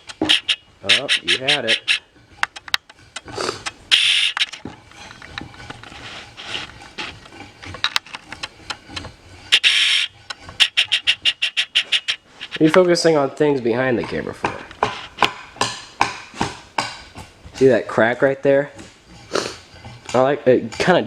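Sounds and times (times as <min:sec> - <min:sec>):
sharp clicks: 0:00.0 - 0:04.6
scraping strokes: 0:00.0 - 0:13.2, 0:14.0 - 0:15.4, 0:16.3 - 0:21.0.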